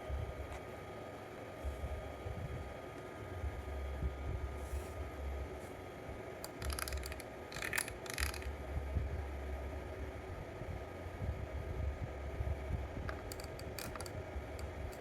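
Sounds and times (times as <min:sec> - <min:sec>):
steady low hum: 0:00.0 - 0:15.0
mechanical clicking and rattling: 0:06.4 - 0:08.6, 0:13.0 - 0:15.0.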